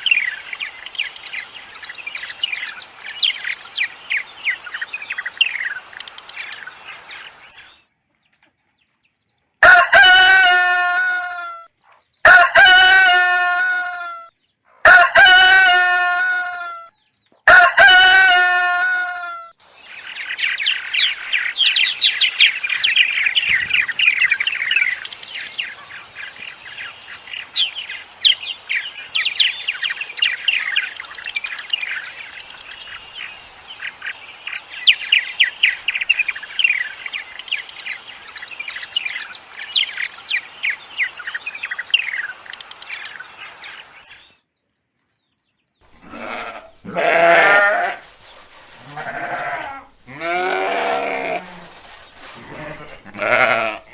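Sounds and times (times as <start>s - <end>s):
birds chirping: 0.0s - 7.8s, 19.6s - 44.4s, 45.8s - 53.9s
goats bleating: 45.9s - 48.1s, 48.8s - 51.8s, 52.4s - 53.9s.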